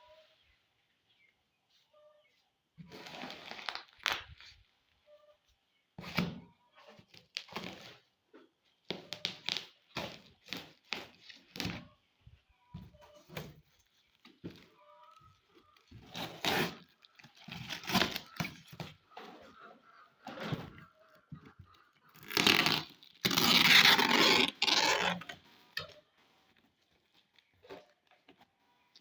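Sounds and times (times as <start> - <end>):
packaging crinkling and tearing: 3.0 - 4.6, 16.1 - 18.8, 22.2 - 25.3.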